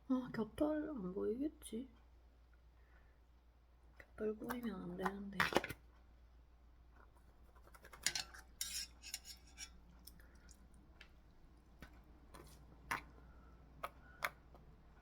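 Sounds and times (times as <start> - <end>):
utensils clinking on a dish: 8.0 - 9.8.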